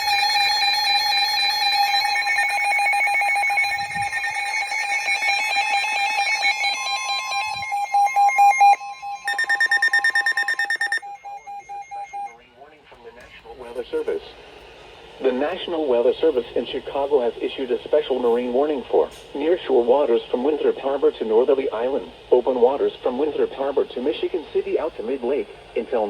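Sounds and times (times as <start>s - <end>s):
electronic beeping alarms: 0.0s - 12.5s
steady warning tone: 0.0s - 14.0s.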